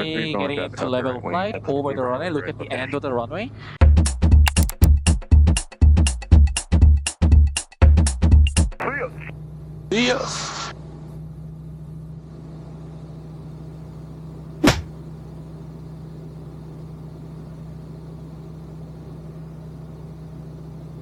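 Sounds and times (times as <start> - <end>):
sharp click: 4.5 - 4.9
aircraft engine drone in cockpit: 9.3 - 21.0.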